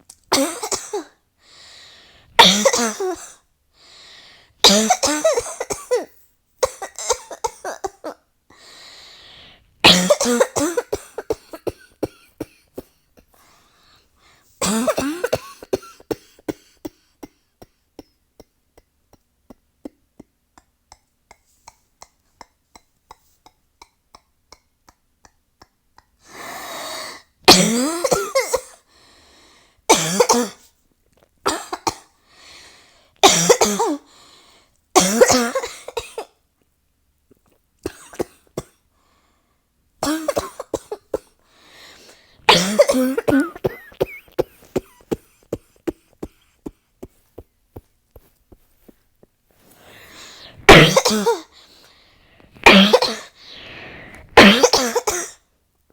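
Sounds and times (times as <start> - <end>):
person coughing: 0.3 - 1.2, 2.4 - 3.4, 4.6 - 8.2, 9.8 - 13.4, 14.6 - 19.2, 27.5 - 28.8, 29.9 - 30.7, 31.5 - 32.1, 33.2 - 34.1, 35.0 - 36.4, 37.8 - 38.8, 40.0 - 47.2, 50.1 - 51.6, 52.6 - 55.4.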